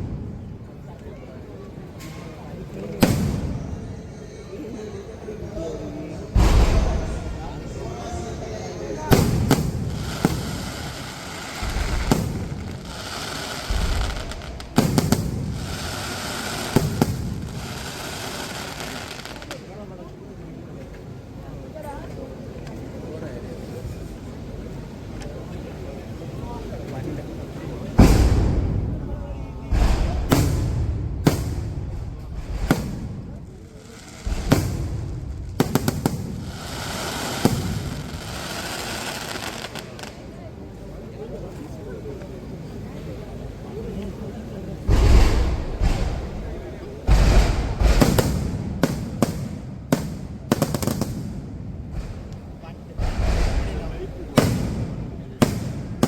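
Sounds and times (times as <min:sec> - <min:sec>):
fireworks bangs: 0:00.0 - 0:01.0, 0:02.6 - 0:04.0, 0:06.3 - 0:19.6, 0:27.9 - 0:40.3, 0:44.8 - 0:56.0
fireworks crackling hiss: 0:03.0 - 0:04.0, 0:06.4 - 0:19.7, 0:29.7 - 0:40.4, 0:44.9 - 0:56.0
low rumbling: 0:11.5 - 0:16.1.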